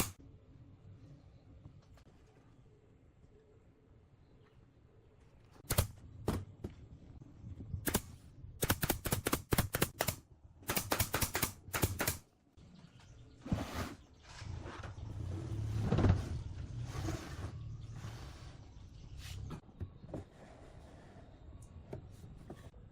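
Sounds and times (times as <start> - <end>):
sharp clicks in quick runs: 8.6 - 12.2.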